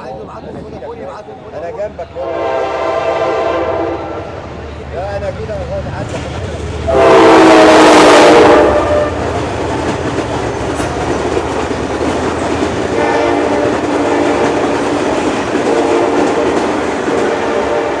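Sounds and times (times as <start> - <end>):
diesel train passing: 0.1 - 18.0
wheels rattling over rails: 9.1 - 17.5.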